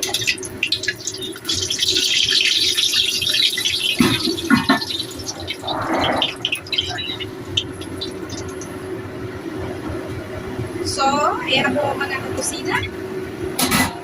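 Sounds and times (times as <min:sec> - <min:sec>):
food deep-frying in hot oil: 0:00.0 - 0:09.6.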